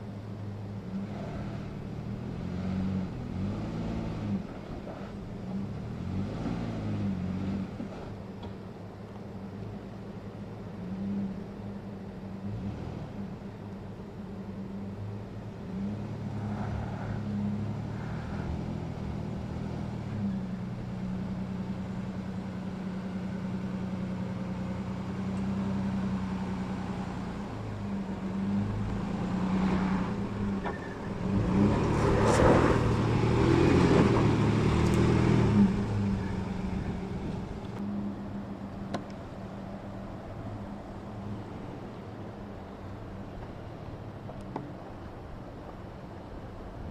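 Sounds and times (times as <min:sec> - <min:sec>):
pickup engine revving: 0:15.6 - 0:42.6.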